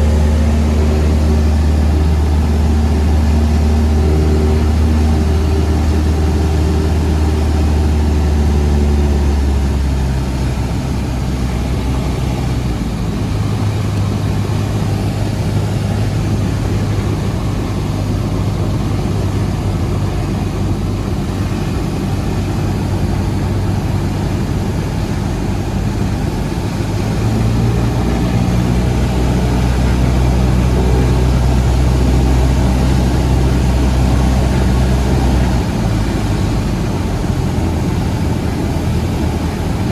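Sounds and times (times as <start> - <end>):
propeller plane engine in flight: 0.0 - 39.9.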